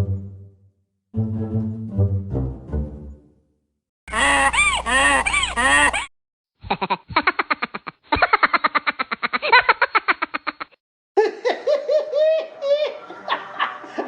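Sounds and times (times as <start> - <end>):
cartoon pitched cries: 4.1 - 6.1.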